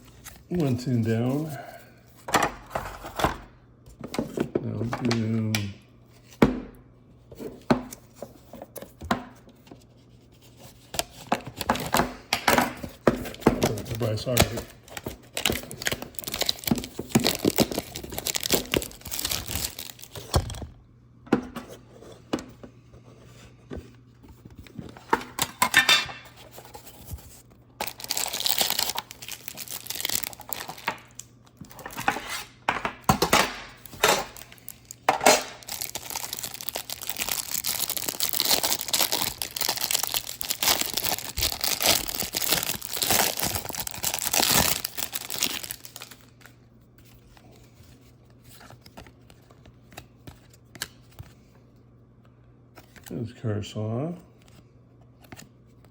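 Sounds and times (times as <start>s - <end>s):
plastic wrapping tearing and crinkling: 13.6s - 20.4s, 27.8s - 32.2s, 33.6s - 46.5s.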